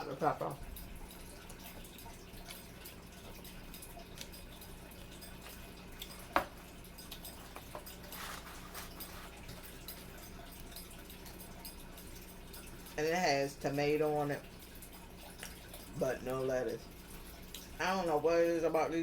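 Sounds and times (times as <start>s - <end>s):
low steady hum: 0.0s - 19.0s
food wrapper rustling: 7.1s - 10.7s.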